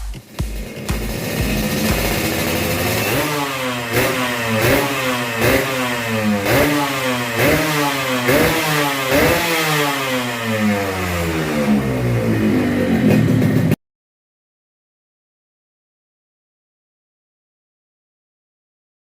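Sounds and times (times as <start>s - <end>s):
motorcycle engine revving: 0.0s - 13.8s.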